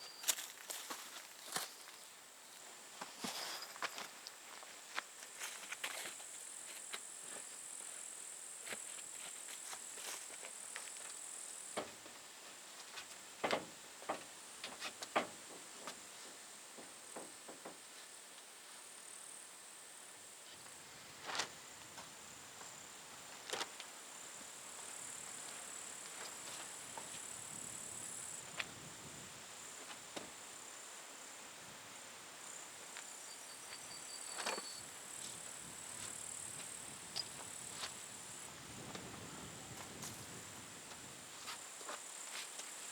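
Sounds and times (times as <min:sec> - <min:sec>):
knocks and taps: 0:17.2 - 0:17.8
insect chirring: 0:32.4 - 0:35.4, 0:36.0 - 0:38.5.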